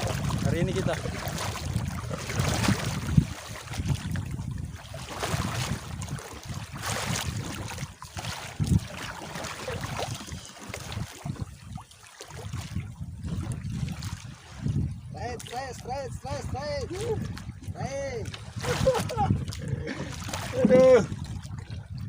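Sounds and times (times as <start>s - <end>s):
water sloshing against boat: 0.0s - 22.0s
wind buffeting microphone: 0.0s - 22.0s.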